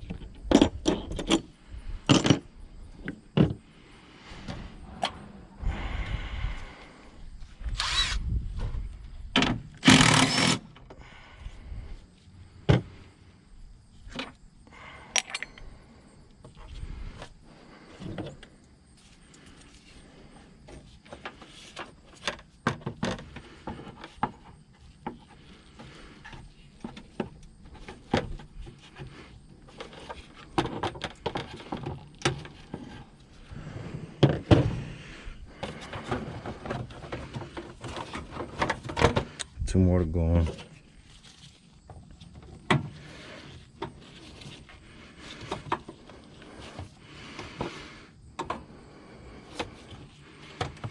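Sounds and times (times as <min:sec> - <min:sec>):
hand tools clinking: 0:15.1 - 0:15.8.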